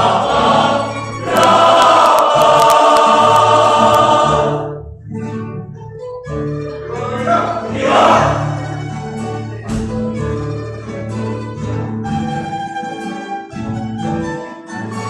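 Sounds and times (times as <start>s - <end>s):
voices singing a chord: 0.0s - 4.8s, 6.9s - 8.6s
plucked guitar notes: 0.0s - 15.0s.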